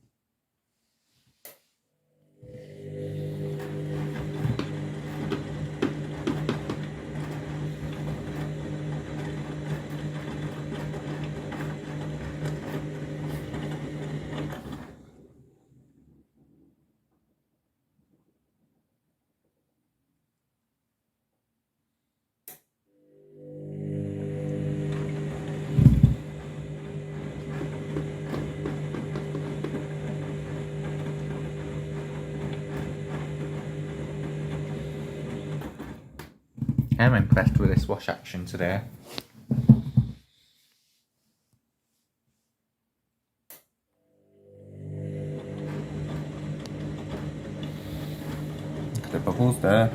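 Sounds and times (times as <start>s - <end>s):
washing machine motor humming: 2.2s - 15.5s, 23.0s - 40.1s, 44.0s - 49.9s.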